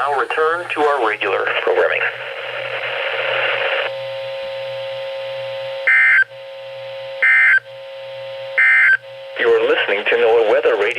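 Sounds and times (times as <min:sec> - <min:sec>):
radio hiss: 0:00.0 - 0:03.9, 0:09.4 - 0:10.9
steady buzzing tone: 0:00.0 - 0:10.7.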